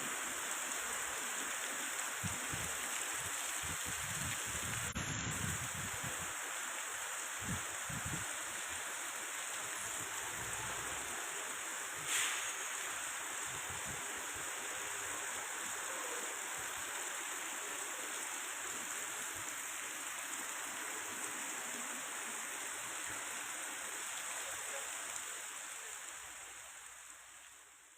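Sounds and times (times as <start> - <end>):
heavy rain: 0.0 - 27.9
rushing floodwater: 0.0 - 27.9.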